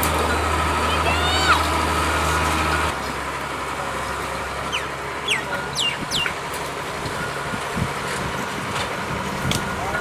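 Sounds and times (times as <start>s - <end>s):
engine humming: 0.0s - 10.0s
bird calling: 4.7s - 6.4s.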